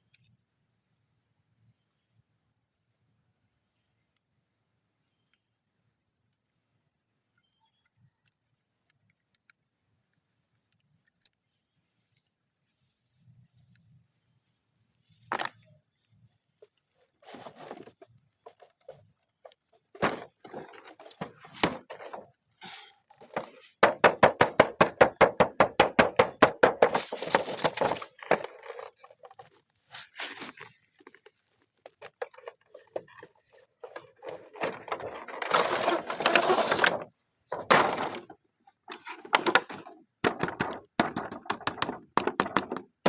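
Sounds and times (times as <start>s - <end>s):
plastic toys knocking: 17.2s - 19.0s, 19.9s - 29.5s, 31.9s - 43.0s
packaging rustling: 17.2s - 19.1s, 19.9s - 24.6s, 25.9s - 42.8s.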